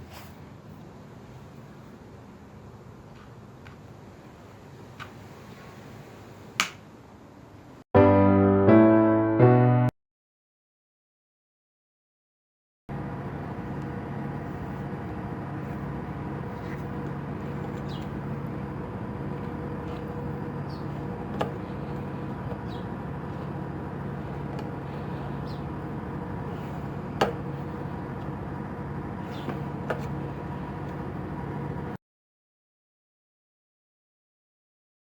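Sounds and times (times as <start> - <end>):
car engine idling: 12.9 - 32.0.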